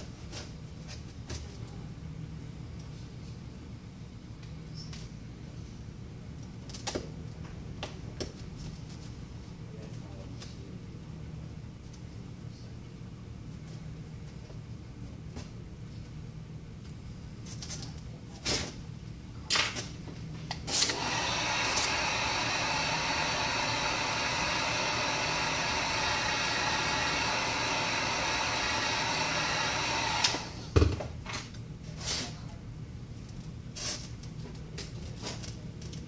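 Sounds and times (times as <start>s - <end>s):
heat gun blowing: 20.7s - 30.7s.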